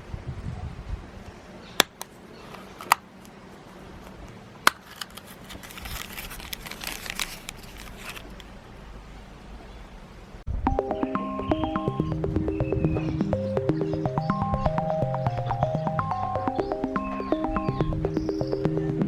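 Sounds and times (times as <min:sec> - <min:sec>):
sharp plastic clicks: 0:01.8 - 0:03.4
plastic wrapper crinkling: 0:04.8 - 0:08.5.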